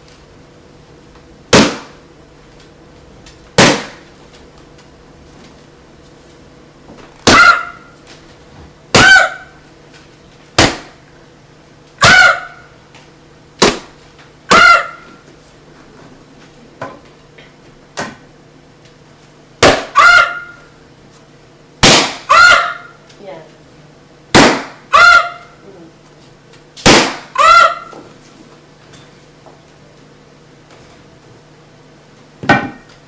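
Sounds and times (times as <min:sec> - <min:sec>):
faint steady hum: 0:00.0 - 0:33.0
sharp loud pops: 0:01.5 - 0:02.0, 0:03.6 - 0:04.0, 0:07.2 - 0:07.6, 0:08.9 - 0:09.4, 0:10.6 - 0:11.0, 0:13.6 - 0:14.8, 0:19.6 - 0:20.0, 0:21.8 - 0:22.3, 0:24.3 - 0:24.8, 0:26.8 - 0:27.4.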